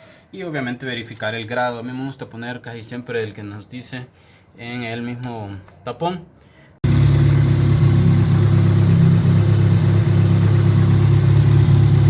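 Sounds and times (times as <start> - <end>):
car engine idling: 6.8 - 12.0.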